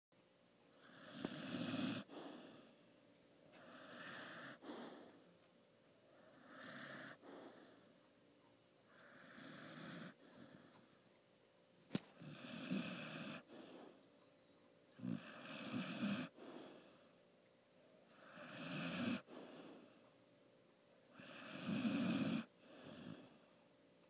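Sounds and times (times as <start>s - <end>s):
dog snoring: 0.7s - 2.8s, 3.5s - 5.3s, 6.1s - 8.1s, 8.8s - 11.0s, 12.1s - 14.1s, 14.9s - 17.2s, 18.1s - 20.1s, 21.1s - 23.6s.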